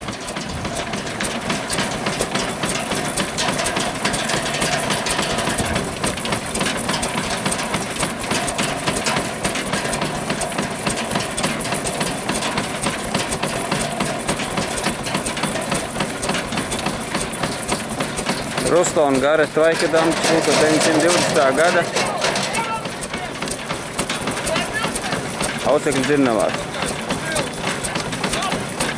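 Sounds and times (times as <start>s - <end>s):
steam engine saw clatter: 0.0s - 28.9s.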